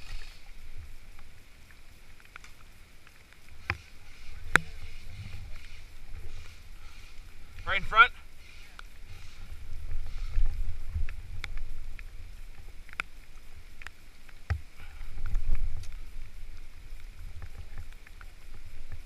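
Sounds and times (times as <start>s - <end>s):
wind rumble on microphone: 3.4s - 19.0s.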